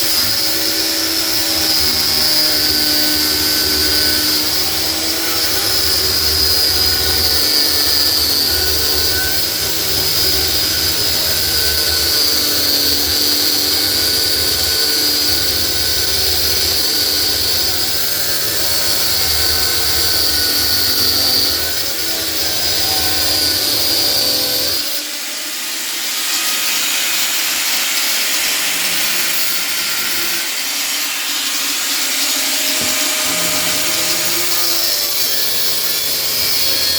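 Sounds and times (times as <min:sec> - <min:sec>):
harsh grinding on metal: 0:00.0 - 0:24.9, 0:32.3 - 0:36.9
power tool motor whine: 0:00.0 - 0:36.9.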